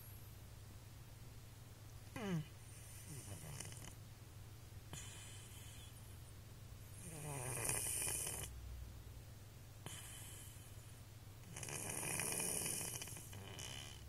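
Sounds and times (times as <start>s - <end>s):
cat snoring: 2.2s - 4.0s, 7.0s - 8.5s, 9.8s - 10.7s, 11.4s - 14.0s.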